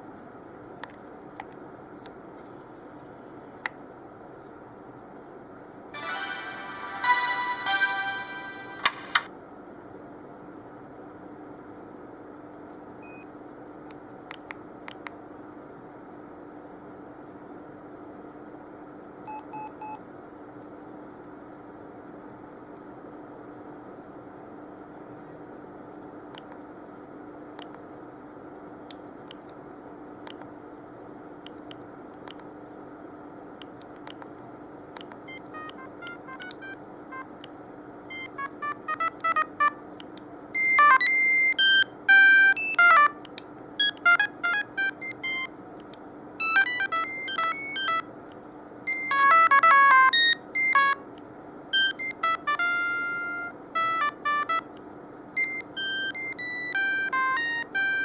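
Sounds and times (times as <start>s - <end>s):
phone ringtone melodies: 6.0s - 9.3s, 35.3s - 37.3s, 38.1s - 39.8s, 40.6s - 43.2s, 43.8s - 45.5s, 46.4s - 48.1s, 48.9s - 51.1s, 51.7s - 54.7s, 55.4s - 58.0s
faint regular clicks: 13.9s - 15.2s, 30.2s - 30.6s, 31.4s - 32.6s, 33.6s - 37.6s, 45.7s - 46.1s
steady low hum: 20.3s - 58.0s.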